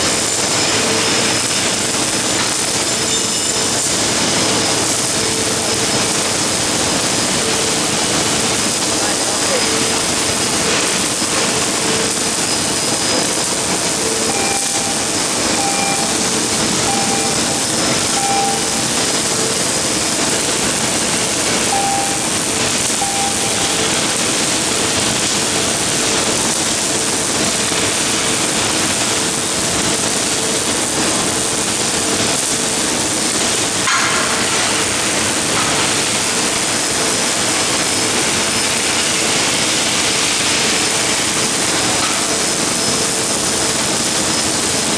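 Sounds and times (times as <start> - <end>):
welding arc hissing: 0.0 - 44.9.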